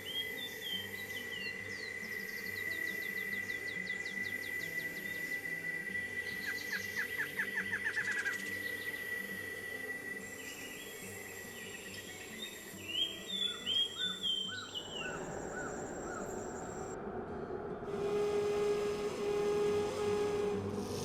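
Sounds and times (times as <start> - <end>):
forest birds calling: 0.0 - 9.3, 10.2 - 17.0
high insect buzz: 0.0 - 17.0, 20.7 - 21.0.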